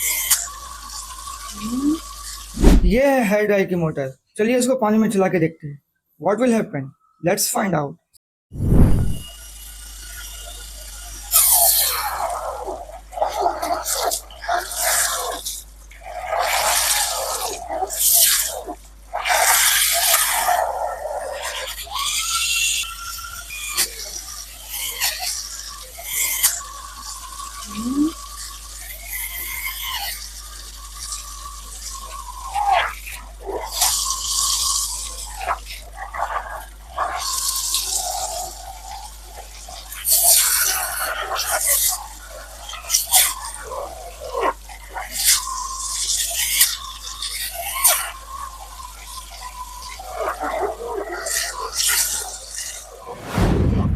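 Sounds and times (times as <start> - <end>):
water splashing and spraying: 2.6 - 3.0
small motor whining underwater: 8.6 - 53.1.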